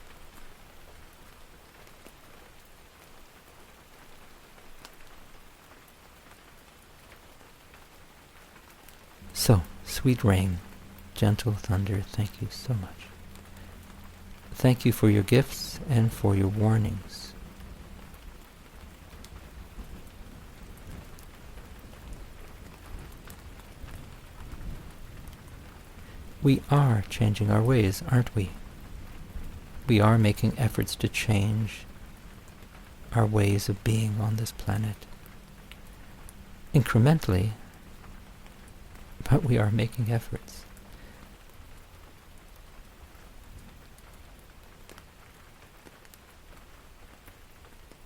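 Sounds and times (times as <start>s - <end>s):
steady rain hiss: 0.0s - 48.0s
low rumble: 9.2s - 29.9s.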